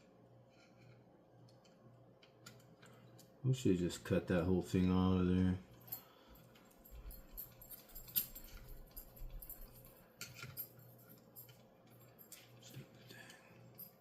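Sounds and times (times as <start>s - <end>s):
small tools clicking and tapping: 0.6s - 3.3s, 5.8s - 14.0s.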